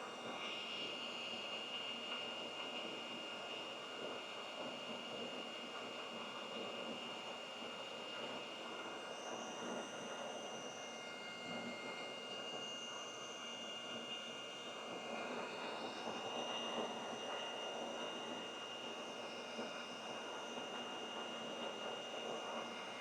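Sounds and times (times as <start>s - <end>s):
thin high whine: 8.6s - 23.0s.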